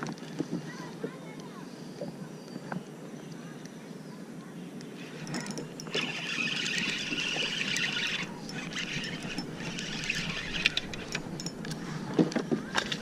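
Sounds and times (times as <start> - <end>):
small clicks: 4.8 - 13.0
fishing reel whirring: 5.0 - 13.0.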